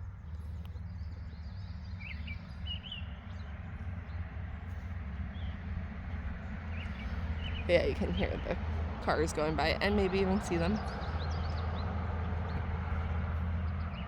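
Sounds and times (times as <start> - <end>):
distant road traffic rumble: 0.0 - 14.0
bird chirps: 0.4 - 4.7.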